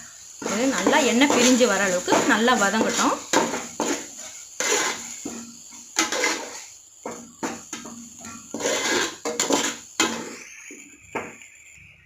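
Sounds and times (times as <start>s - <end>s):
ladle scraping and stirring in pot: 0.4s - 5.4s, 6.0s - 6.7s, 7.8s - 10.3s.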